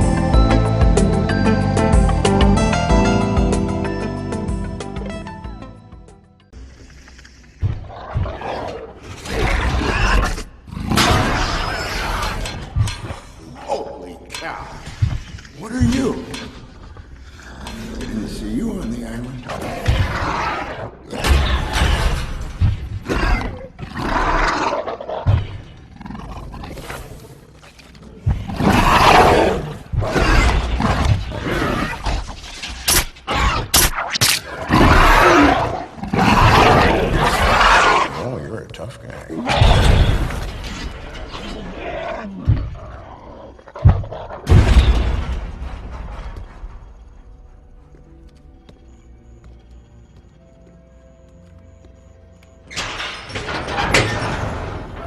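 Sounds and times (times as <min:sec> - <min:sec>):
creature roaring: 0:28.4 - 0:32.2, 0:34.5 - 0:38.4.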